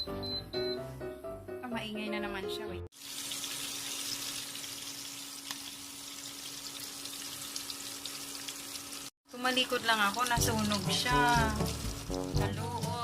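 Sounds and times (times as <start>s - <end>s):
oil sizzling in a frying pan: 2.9s - 13.0s.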